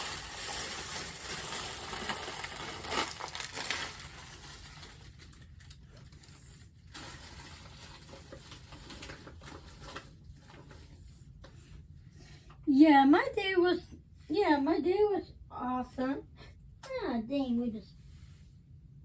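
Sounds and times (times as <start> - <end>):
dry cereal pattering and rustling: 0.0 - 10.2.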